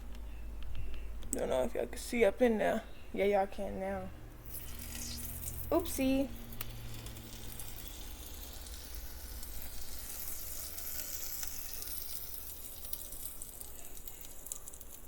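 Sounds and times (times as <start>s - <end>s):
chicken frying in oil: 4.5s - 15.0s.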